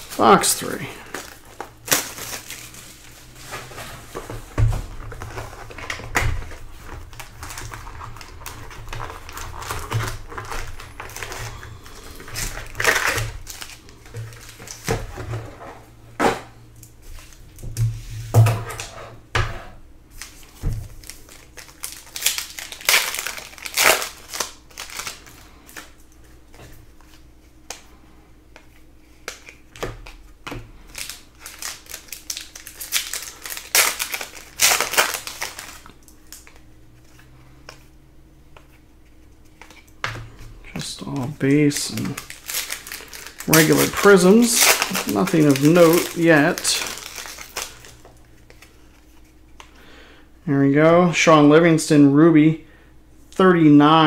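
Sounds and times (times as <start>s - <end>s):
foil packs crinkling and tearing: 0.0s - 15.3s, 20.1s - 26.0s, 29.2s - 37.4s, 40.6s - 49.2s
trading cards clicking and riffling: 40.7s - 49.8s.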